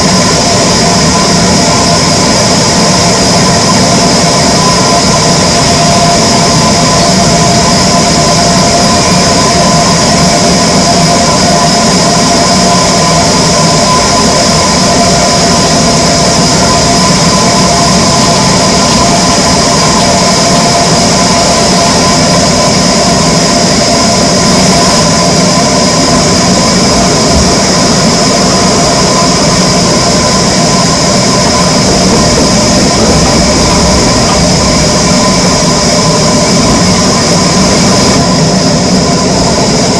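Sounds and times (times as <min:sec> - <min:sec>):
power saw running: 0:25.7 - 0:38.3.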